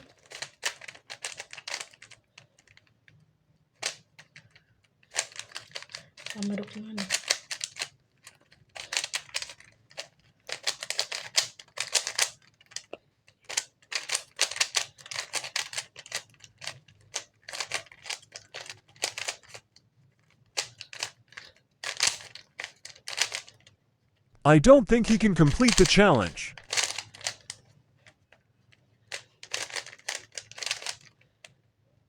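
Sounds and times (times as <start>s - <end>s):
puzzle cube layers clicking: 24.5s - 27.4s.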